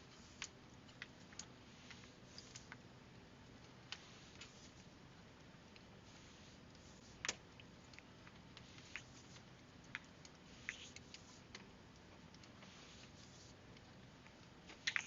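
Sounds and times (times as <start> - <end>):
light clicks and taps: 0.2 - 2.8, 6.7 - 15.0.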